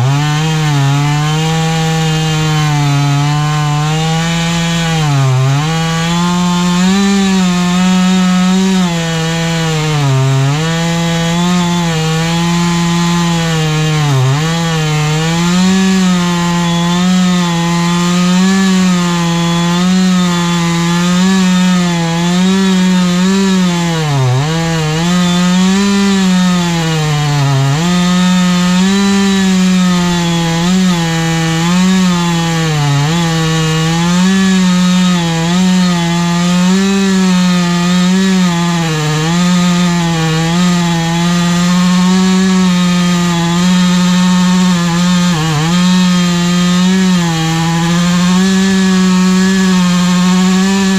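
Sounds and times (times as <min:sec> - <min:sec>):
chainsaw cutting through log: 0:00.0 - 0:50.9.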